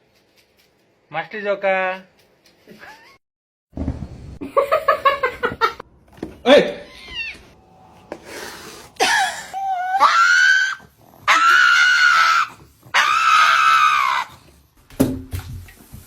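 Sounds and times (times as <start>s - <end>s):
high-pitched screaming: 6.9s - 14.3s.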